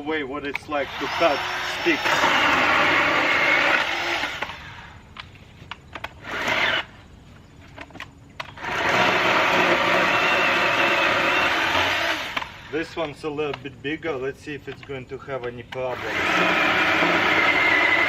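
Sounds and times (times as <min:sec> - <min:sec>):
electric chainsaw cutting sticks: 0:00.4 - 0:05.0, 0:06.0 - 0:07.0, 0:07.9 - 0:13.1, 0:15.7 - 0:18.0.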